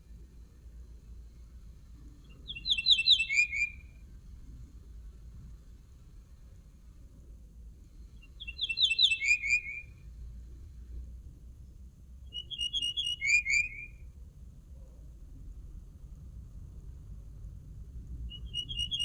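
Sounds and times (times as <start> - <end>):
low background hum: 0.0 - 19.0
songbird trilling: 2.2 - 3.9, 8.2 - 9.9, 12.3 - 13.9, 18.3 - 19.0.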